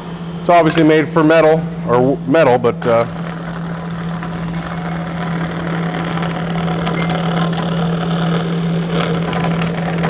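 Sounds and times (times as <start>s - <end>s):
bandsaw humming: 2.8s - 10.0s.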